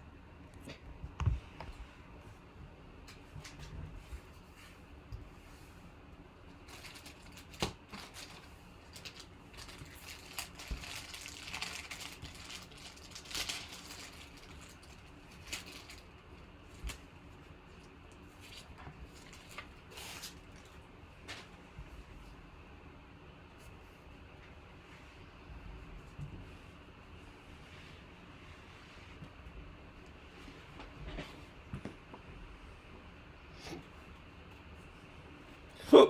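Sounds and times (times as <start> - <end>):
wrappers crinkling and tearing: 6.6 - 20.8.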